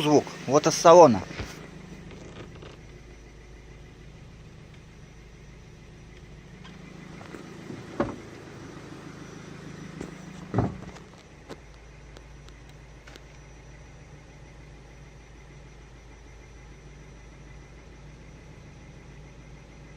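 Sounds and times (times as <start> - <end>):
car engine knocking: 0.0 - 13.3
loud thumps: 6.6 - 8.4, 10.0 - 11.2.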